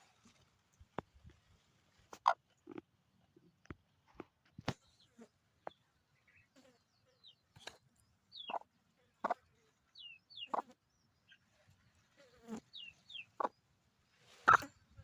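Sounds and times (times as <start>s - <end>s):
chicken clucking: 8.4s - 9.5s, 10.3s - 10.7s, 12.6s - 13.6s, 14.4s - 14.7s.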